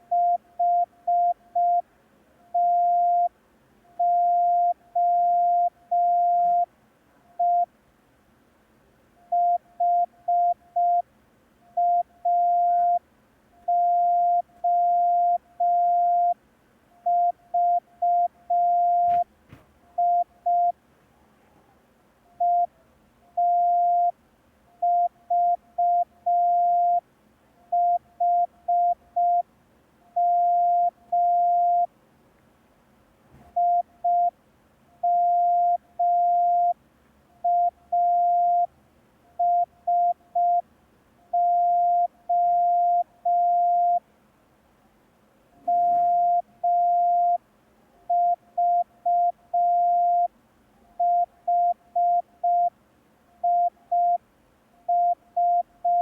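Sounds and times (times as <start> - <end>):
morse code beeps: 9.4 - 11.0, 11.8 - 13.0, 13.7 - 16.4, 17.1 - 19.2, 20.0 - 20.7, 22.4 - 22.7, 23.4 - 24.1, 24.8 - 27.0, 27.7 - 29.4, 30.2 - 31.9, 33.6 - 34.3, 35.0 - 36.8, 37.4 - 38.7, 39.4 - 40.6, 41.4 - 44.0, 45.6 - 47.4, 48.1 - 50.3, 51.0 - 52.7, 53.4 - 54.2, 54.9 - 56.0.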